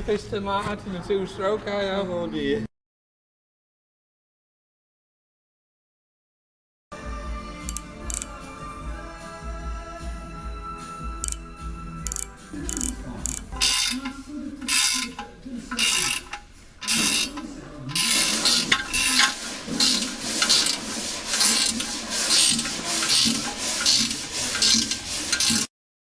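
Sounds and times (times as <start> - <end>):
tool scraping metal: 7.7 - 8.4, 11.2 - 11.5, 12.1 - 25.7.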